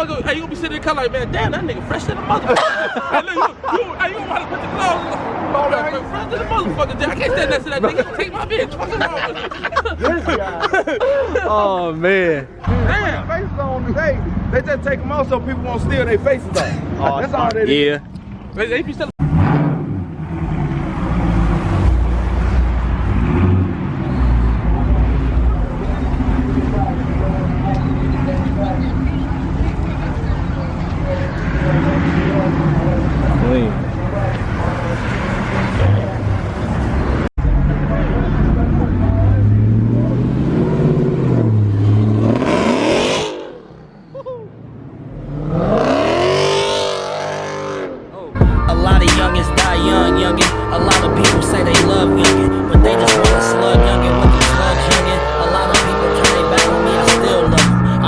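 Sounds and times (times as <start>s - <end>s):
car engine revving: 19.1s - 43.9s, 44.8s - 58.0s.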